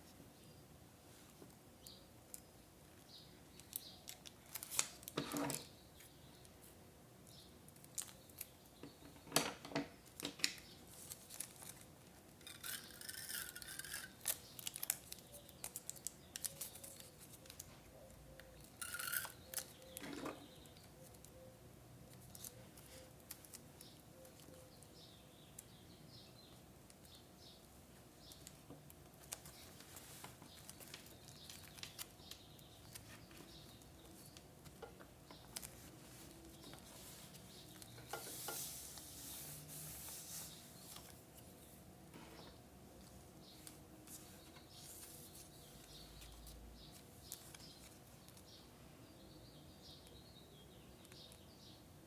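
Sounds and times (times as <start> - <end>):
paper rustling: 28.4 - 34.8, 35.4 - 41.8, 43.0 - 48.4.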